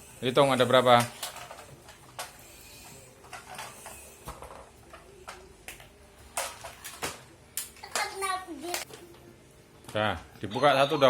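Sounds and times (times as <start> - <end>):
toy trucks clattering: 0.8 - 5.5
toy trucks clicking and knocking: 0.8 - 8.2.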